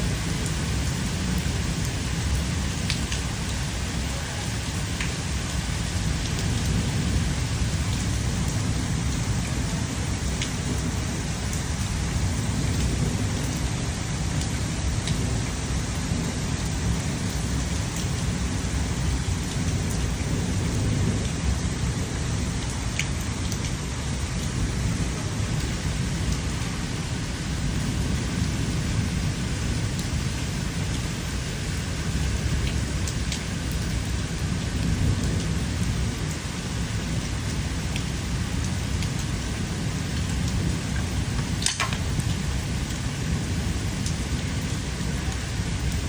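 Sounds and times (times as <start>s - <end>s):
steady rain: 0.0s - 46.0s
water drops ticking: 40.5s - 42.4s.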